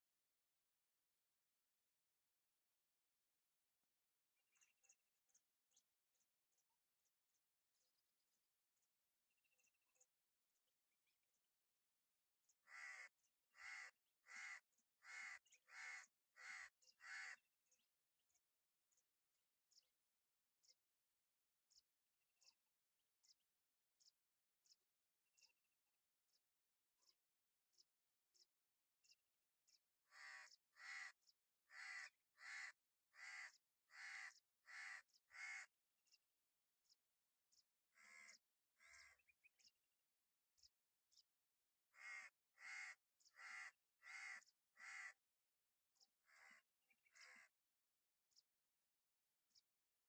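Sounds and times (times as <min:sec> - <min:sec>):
crow cawing: 0:12.7 - 0:17.4, 0:30.1 - 0:35.7, 0:38.0 - 0:39.1, 0:41.9 - 0:45.2, 0:46.3 - 0:46.6, 0:47.2 - 0:47.5.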